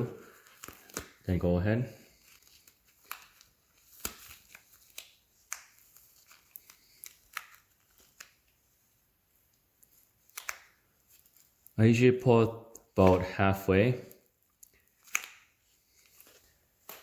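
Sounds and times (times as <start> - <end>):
small clicks and rustles: 2.1 - 8.8, 9.4 - 11.8.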